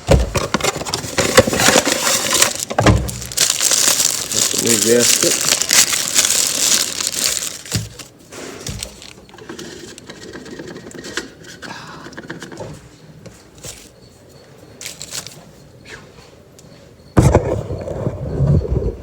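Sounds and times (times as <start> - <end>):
hands handling filter parts: 0.1 - 14.0, 14.8 - 15.6.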